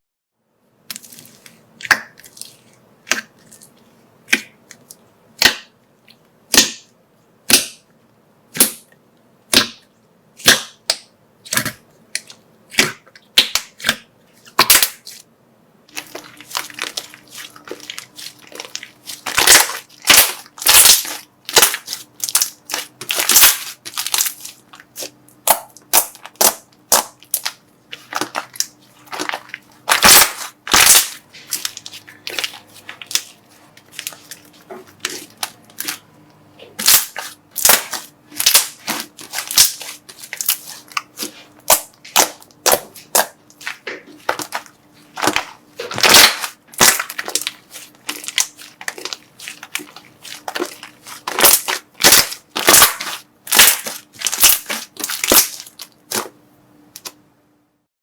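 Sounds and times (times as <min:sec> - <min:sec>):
slime popping and crackling: 0:15.9 - 0:36.1, 0:36.7 - 0:56.4.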